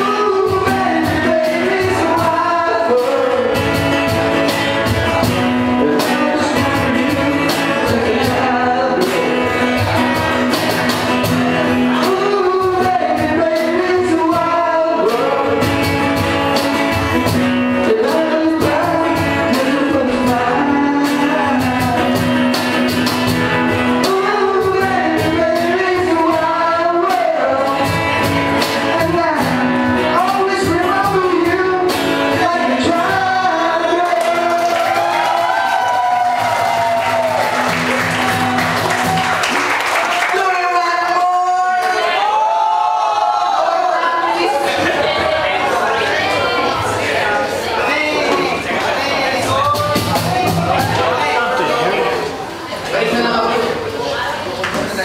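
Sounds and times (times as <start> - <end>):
man singing: 0.0 - 35.4, 40.3 - 42.6
electric guitar: 0.0 - 40.1
drums: 0.0 - 47.6, 48.2 - 55.0.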